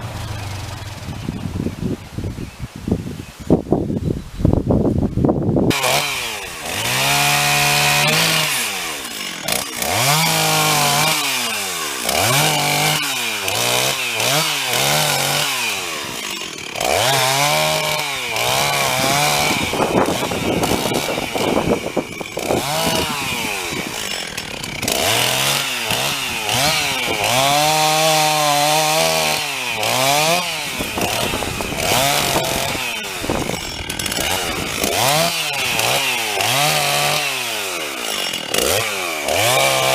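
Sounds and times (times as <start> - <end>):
chainsaw cutting wood: 5.6 - 39.9.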